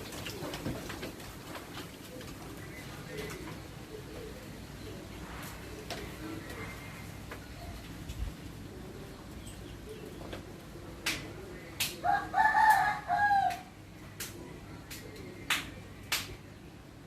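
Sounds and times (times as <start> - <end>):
rooster crowing: 12.0 - 13.7.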